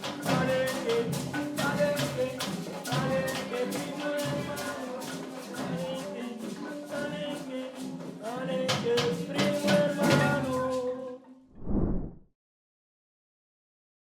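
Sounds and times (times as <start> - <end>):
music with shaken percussion: 0.0 - 11.1.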